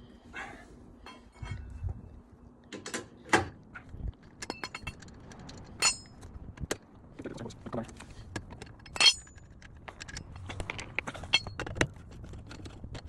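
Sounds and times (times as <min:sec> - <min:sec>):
lug wrench clinking on nuts: 0:04.4 - 0:06.2, 0:08.5 - 0:11.8.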